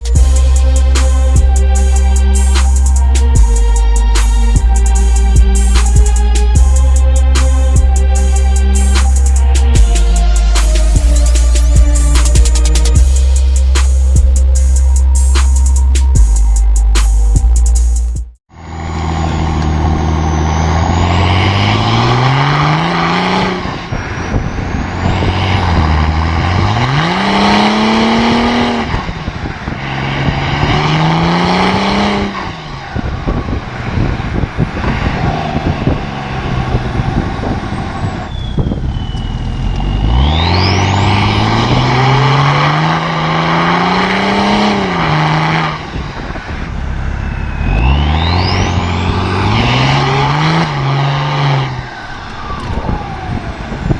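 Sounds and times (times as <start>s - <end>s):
high turbo whistle: 0.0s - 29.2s, 31.6s - 53.9s
diesel car engine accelerating: 0.0s - 53.9s.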